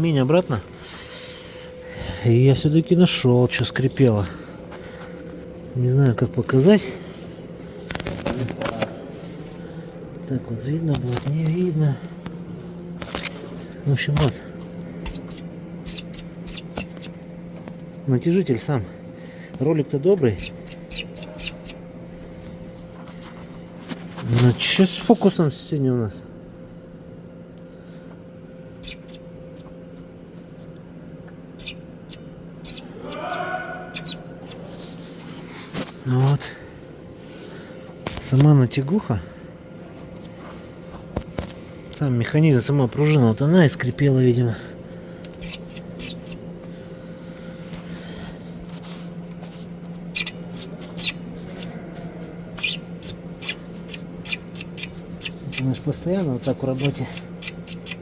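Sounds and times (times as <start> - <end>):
belt tensioner squeaking: 15.1 - 17.2, 20.4 - 21.8, 28.8 - 29.7, 31.6 - 33.4, 34.0 - 35.0, 45.3 - 46.4, 50.1 - 58.0.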